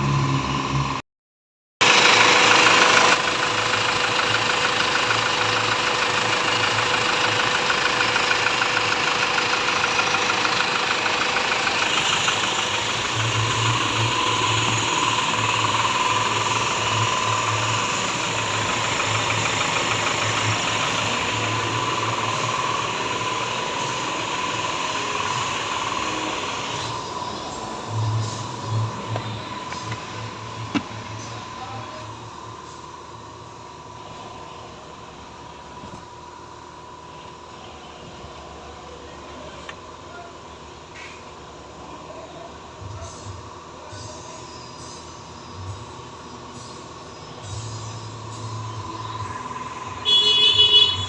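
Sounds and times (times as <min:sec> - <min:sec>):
van engine idling: 0:01.8 - 0:51.0.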